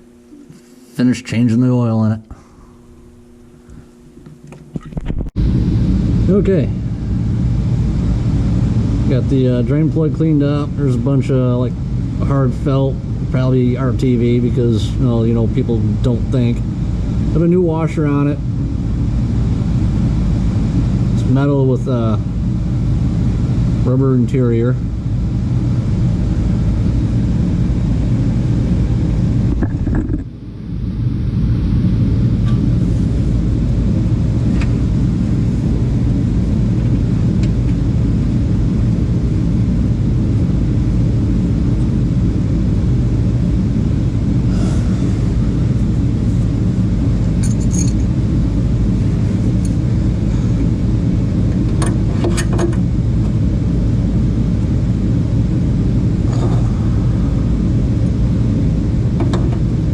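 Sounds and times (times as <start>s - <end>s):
low mechanical rumble: 0.0s - 59.9s
metallic clinks of tools: 47.4s - 48.0s.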